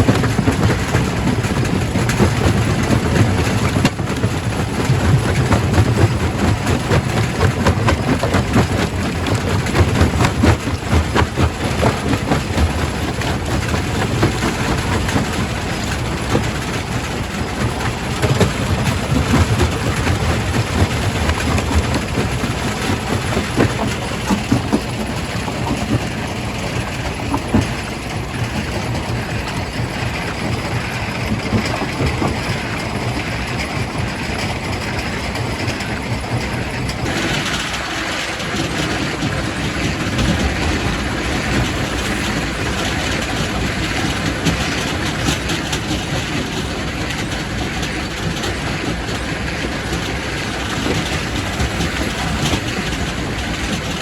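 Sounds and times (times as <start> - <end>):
rocks knocking and cracking: 0.0 - 28.7
rock crusher low rumble: 0.0 - 54.0
steady grinding noise: 0.0 - 54.0.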